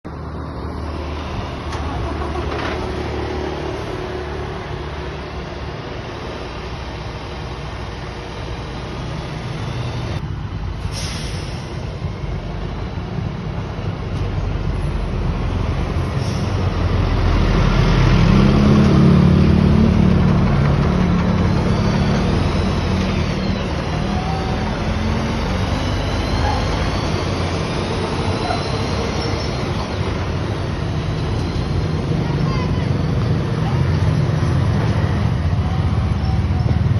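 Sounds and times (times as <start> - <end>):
truck diesel engine running: 0.1 - 36.9
short air hisses: 10.8 - 11.8.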